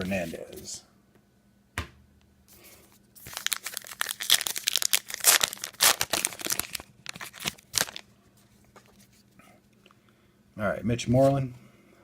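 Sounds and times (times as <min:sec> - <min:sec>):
foil wrapper tearing and crinkling: 0:03.2 - 0:08.1.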